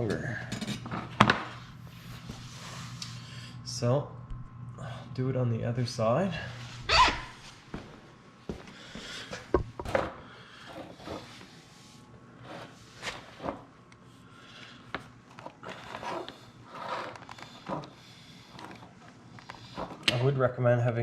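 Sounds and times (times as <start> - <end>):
knife scraping plastic: 15.3 - 20.2.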